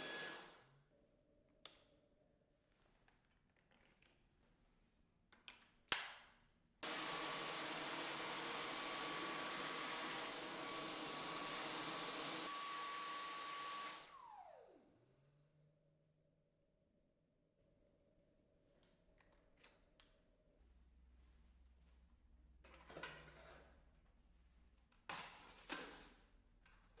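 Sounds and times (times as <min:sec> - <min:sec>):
cordless vacuum whining: 0:00.0 - 0:00.6, 0:06.8 - 0:15.2.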